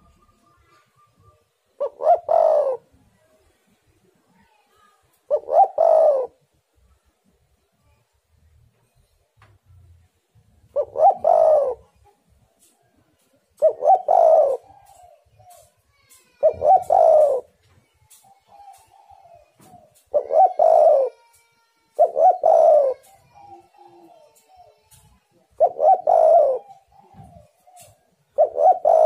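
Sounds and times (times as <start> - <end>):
dove cooing: 0.0 - 3.0, 5.3 - 6.4, 10.6 - 29.0.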